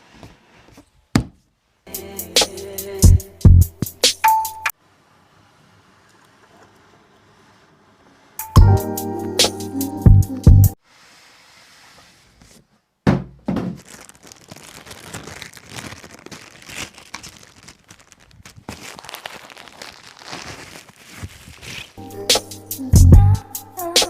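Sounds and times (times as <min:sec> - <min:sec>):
thunk: 0:13.1 - 0:13.8
plastic wrapping crinkling: 0:13.7 - 0:22.0.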